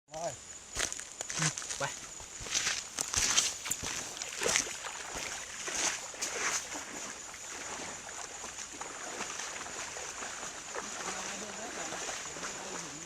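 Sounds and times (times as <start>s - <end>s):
waterfall and stream rushing: 1.8s - 13.0s.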